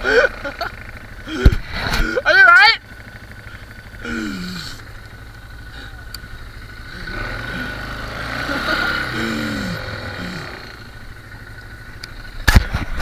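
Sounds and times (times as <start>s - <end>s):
atv engine rumbling: 0.0s - 13.0s
short vocal sounds: 8.8s - 10.9s.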